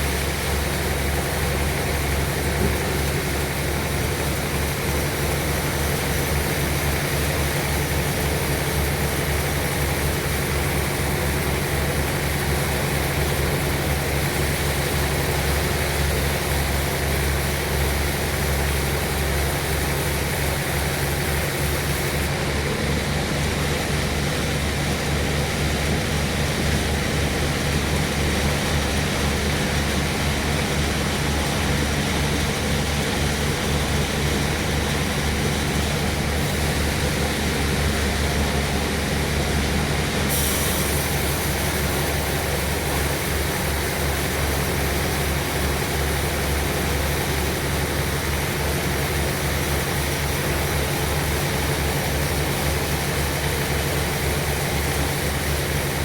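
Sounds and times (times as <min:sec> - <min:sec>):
sawmill engine drone: 0:00.0 - 0:56.0
mechanical hiss: 0:40.3 - 0:42.7.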